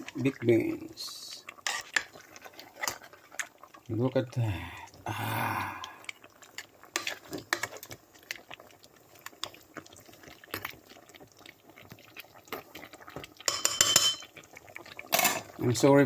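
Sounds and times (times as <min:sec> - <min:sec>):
thick stew bubbling: 0:00.0 - 0:16.0.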